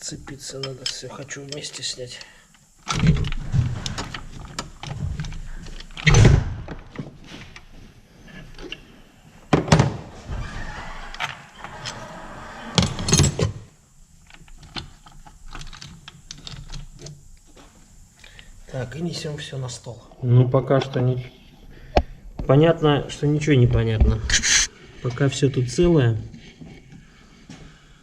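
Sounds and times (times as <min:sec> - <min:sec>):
loose metal parts rattling: 0:00.0 - 0:02.2
metal clunks and scraping: 0:02.8 - 0:06.0.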